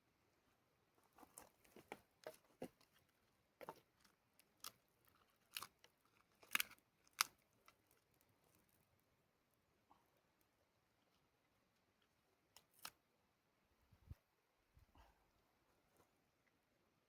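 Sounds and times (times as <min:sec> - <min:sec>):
dry twigs snapping: 0:05.5 - 0:07.8.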